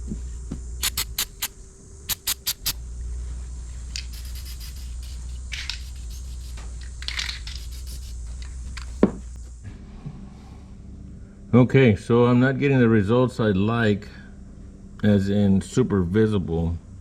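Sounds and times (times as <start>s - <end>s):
aerosol can ball rattling: 0.8s - 1.5s, 2.1s - 2.8s, 3.9s - 9.1s
spray can hissing: 0.8s - 2.8s, 3.9s - 9.2s.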